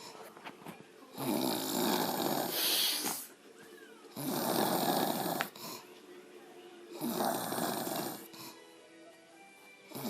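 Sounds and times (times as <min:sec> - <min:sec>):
woman snoring: 0:01.2 - 0:03.2, 0:04.2 - 0:05.8, 0:07.0 - 0:08.5.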